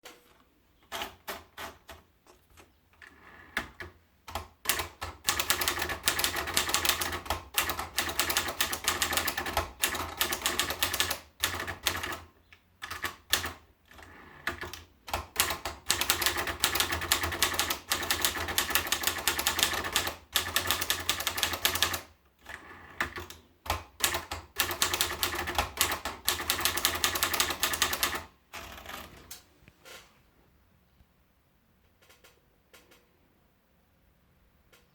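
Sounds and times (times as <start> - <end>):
typewriter keystrokes clacking: 3.6 - 13.6, 14.5 - 22.1, 23.0 - 29.4.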